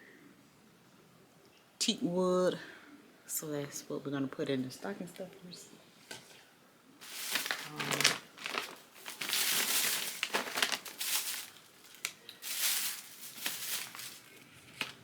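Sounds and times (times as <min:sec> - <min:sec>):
plastic packaging crinkling: 0:07.0 - 0:15.0.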